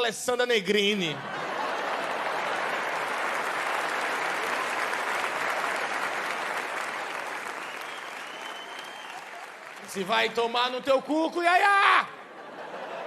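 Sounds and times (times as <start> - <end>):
audience applause: 1.4 - 10.5.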